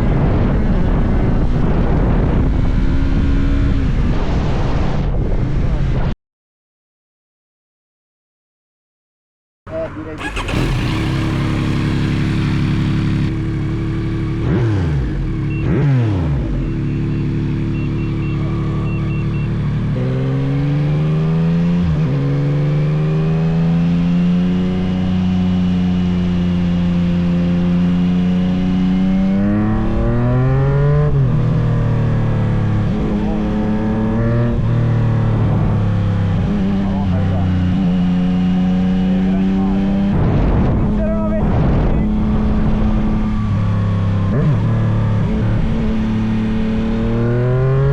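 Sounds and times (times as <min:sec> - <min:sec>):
motorcycle engine revving: 0:09.8 - 0:47.9.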